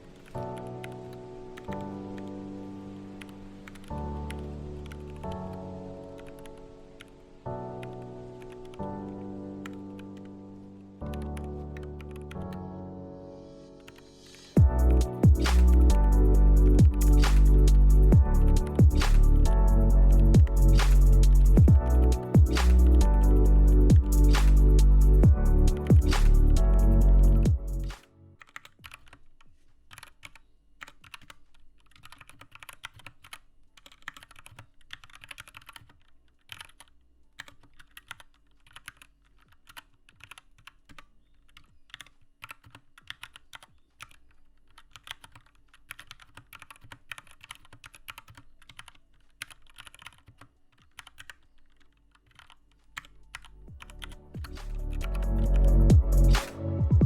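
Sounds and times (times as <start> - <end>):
music: 0.0 - 28.4, 53.4 - 57.0
mechanical keyboard typing: 3.2 - 12.7, 14.6 - 56.8.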